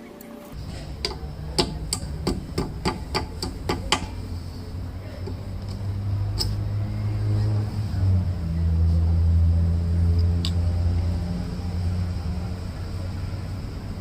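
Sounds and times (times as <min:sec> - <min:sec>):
low steady rumble: 0:00.6 - 0:14.0
sharp metallic clicks: 0:00.8 - 0:04.3, 0:05.2 - 0:06.7.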